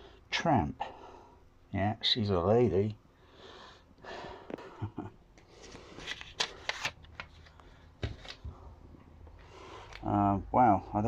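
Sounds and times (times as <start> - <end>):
packaging rustling and scraping: 5.5 - 8.5.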